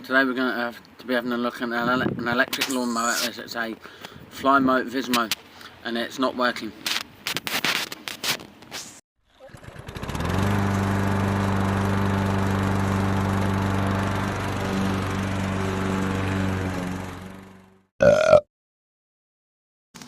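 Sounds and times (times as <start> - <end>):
electric lawnmower motor humming: 9.4 - 17.9.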